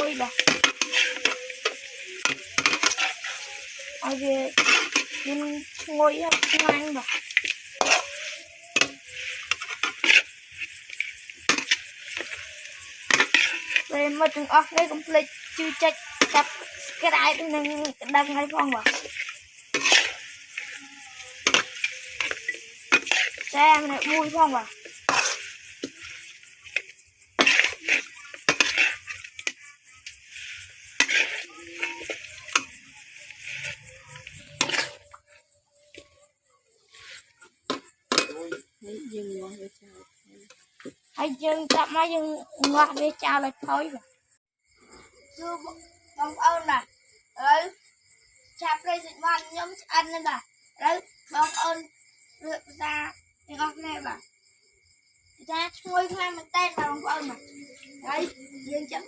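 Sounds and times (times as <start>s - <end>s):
metal utensils clinking on cookware: 0.0s - 35.2s, 37.0s - 38.7s, 51.4s - 51.8s
food sizzling in a pan: 0.0s - 59.0s.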